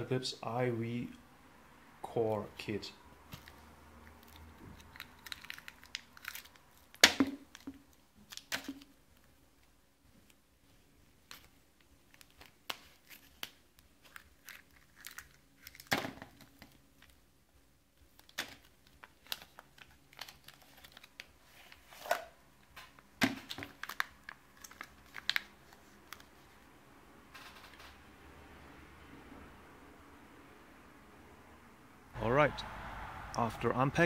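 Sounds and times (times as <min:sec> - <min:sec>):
packaging crinkling: 0:04.2 - 0:08.9, 0:12.1 - 0:16.6, 0:18.1 - 0:22.1, 0:23.3 - 0:26.4.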